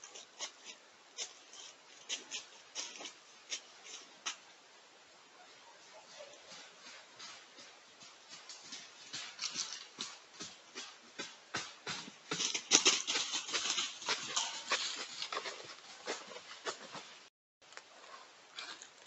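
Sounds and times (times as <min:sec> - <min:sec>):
animal rustling and crackling: 0:12.3 - 0:17.2.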